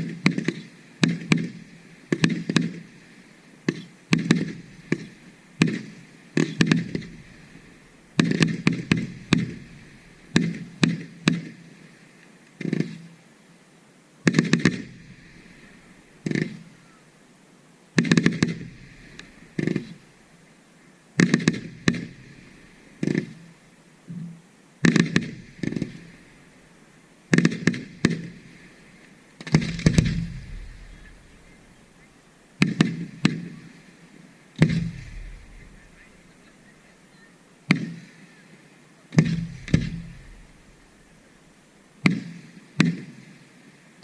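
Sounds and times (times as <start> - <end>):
fireworks bursting: 0.0 - 3.0, 3.7 - 11.8, 12.6 - 13.1, 14.2 - 17.0, 18.0 - 20.4, 21.2 - 24.2, 24.8 - 43.3
deep fireworks booms: 4.1 - 11.6, 14.3 - 16.8, 18.0 - 20.2, 21.2 - 23.5, 24.8 - 26.7, 27.3 - 33.8, 34.6 - 36.8, 39.2 - 42.3.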